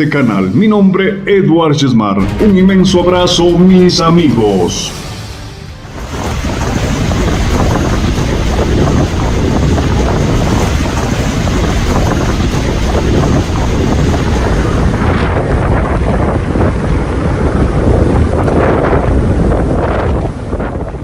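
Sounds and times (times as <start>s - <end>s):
wind buffeting microphone: 4.9s - 21.0s.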